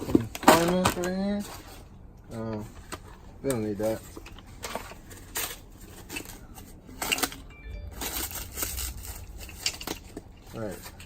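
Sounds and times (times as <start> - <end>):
plastic packaging rustling: 3.8 - 11.0.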